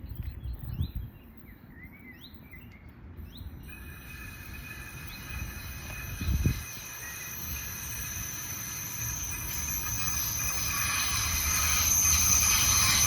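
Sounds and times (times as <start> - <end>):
birds chirping: 0.0 - 13.0
train approaching with high tones: 3.0 - 13.0.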